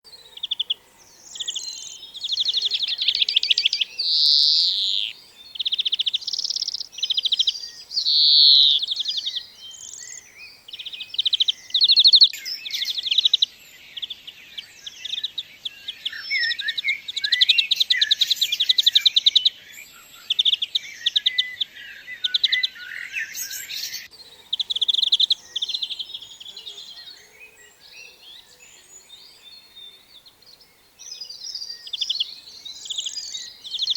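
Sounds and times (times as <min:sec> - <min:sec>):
bird buzzy trills: 0:01.3 - 0:10.2.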